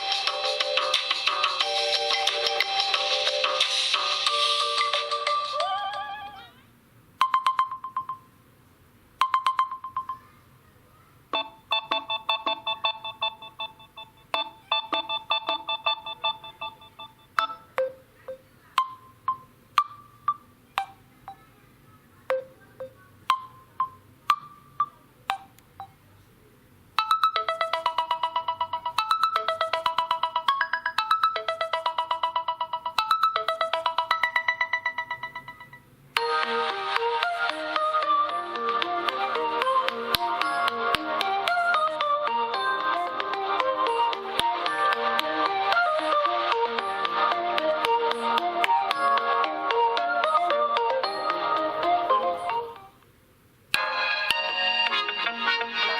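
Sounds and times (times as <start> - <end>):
phone ringtone chime melody: 0.0 - 6.2, 7.2 - 8.3, 9.2 - 10.2, 11.4 - 18.0, 27.0 - 36.6.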